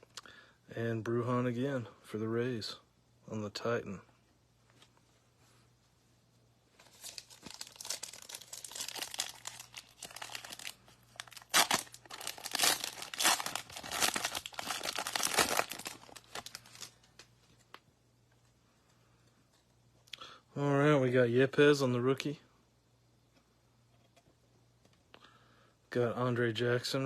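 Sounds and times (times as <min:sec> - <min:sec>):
foil wrapper tearing and crinkling: 0:06.8 - 0:17.1.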